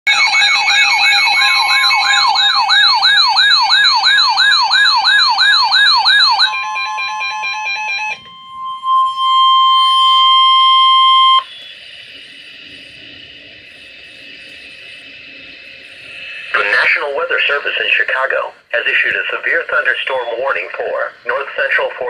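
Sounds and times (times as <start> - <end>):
electronic siren-like sweeping tone: 0.1 - 17.3
stepping electronic warble: 6.5 - 17.6
steady single tone: 8.1 - 16.7.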